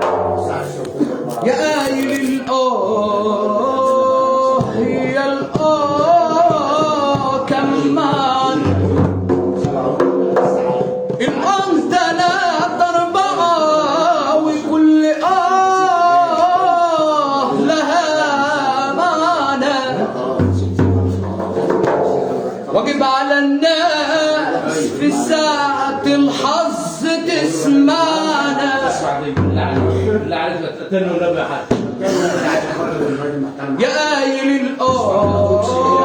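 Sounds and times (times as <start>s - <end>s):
drums and percussion: 0.0s - 2.4s, 4.3s - 14.2s, 19.8s - 22.8s, 28.8s - 30.5s, 31.7s - 32.3s, 34.8s - 36.0s.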